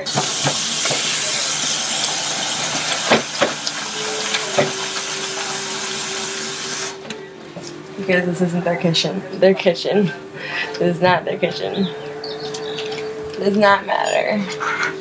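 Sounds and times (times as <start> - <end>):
tap running into a bowl: 0.0 - 1.8, 2.6 - 5.6.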